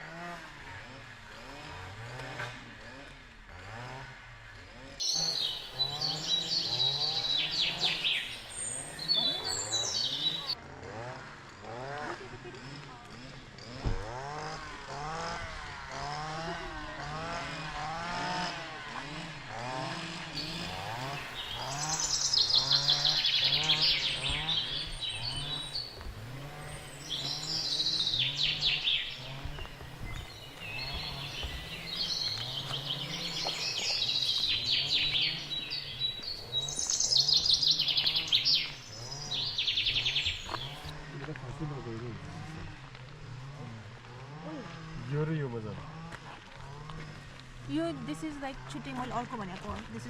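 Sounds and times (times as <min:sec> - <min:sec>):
songbirds trilling: 0:05.0 - 0:10.6, 0:19.6 - 0:41.1.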